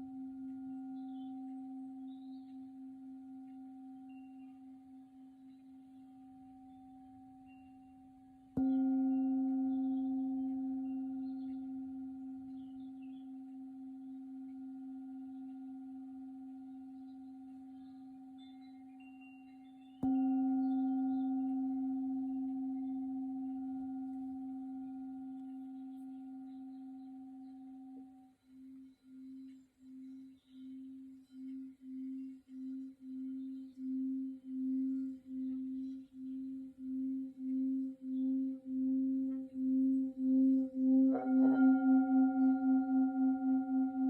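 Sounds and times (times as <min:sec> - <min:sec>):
singing bowl ringing: 0:00.0 - 0:44.0.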